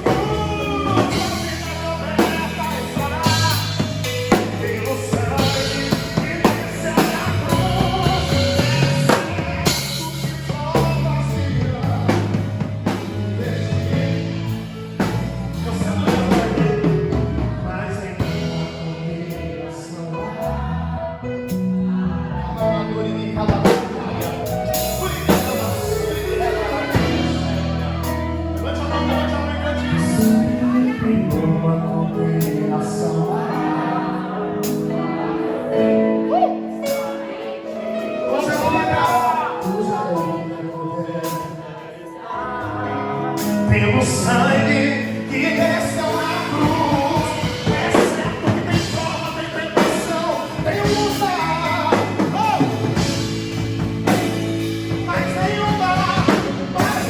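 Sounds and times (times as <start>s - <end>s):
drum kit: 0.0s - 19.6s, 23.3s - 31.7s, 43.4s - 57.0s
singing: 0.0s - 57.0s
worship band playing: 0.0s - 57.0s.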